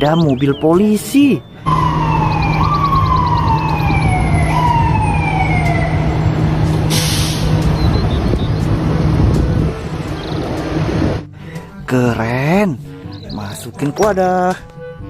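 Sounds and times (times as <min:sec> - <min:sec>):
low engine rumble: 0:01.4 - 0:11.9
police siren wailing: 0:01.5 - 0:08.3
short hiss: 0:06.9 - 0:07.5.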